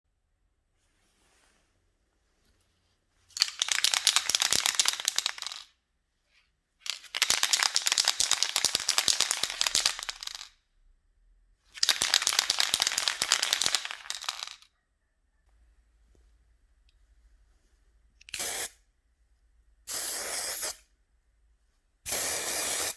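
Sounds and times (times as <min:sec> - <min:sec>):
spray paint can rattling: 0:03.3 - 0:05.7, 0:06.8 - 0:10.5, 0:11.8 - 0:14.7, 0:22.1 - 0:22.9.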